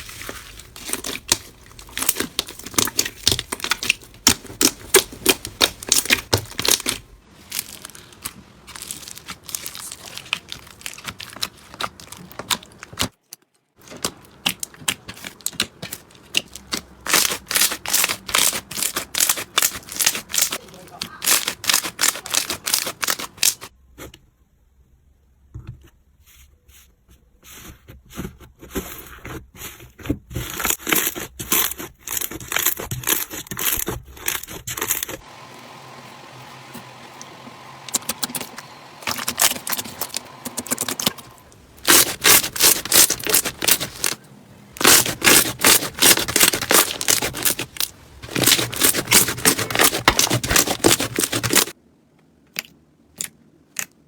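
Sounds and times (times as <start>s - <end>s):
slime crackling and popping: 0.0s - 23.7s, 37.2s - 44.2s, 44.8s - 51.8s.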